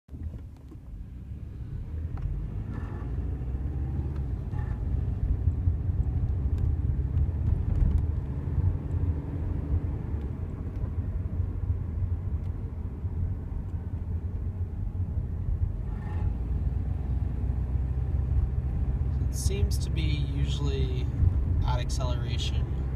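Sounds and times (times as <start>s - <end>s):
car driving rumble: 0.1s - 22.9s
car groaning noise: 0.9s - 11.1s, 15.6s - 22.9s.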